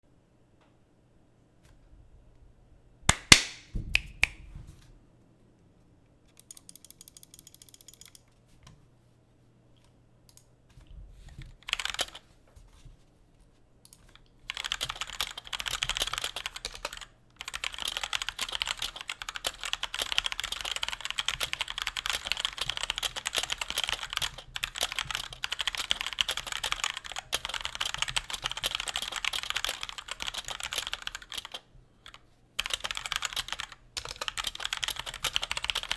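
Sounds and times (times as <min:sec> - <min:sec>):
typing on mechanical keyboard: 0:06.4 - 0:08.2, 0:11.4 - 0:12.2, 0:13.9 - 0:35.9.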